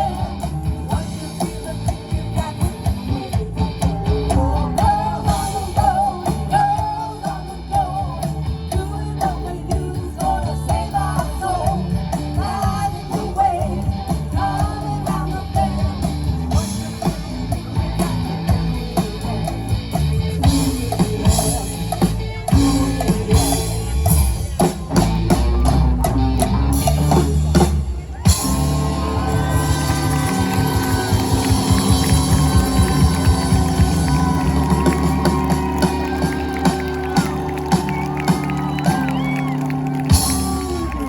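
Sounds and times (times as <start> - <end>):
person singing: 0.0 - 24.3
drum kit: 0.0 - 41.0
rock band playing: 0.0 - 41.0.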